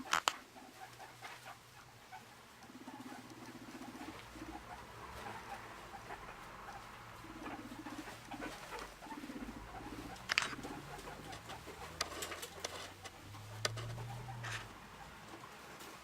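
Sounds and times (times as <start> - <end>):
small clicks: 0.0 - 0.4, 10.3 - 10.6
guinea pigs purring: 0.0 - 16.0
rustling: 0.0 - 16.0.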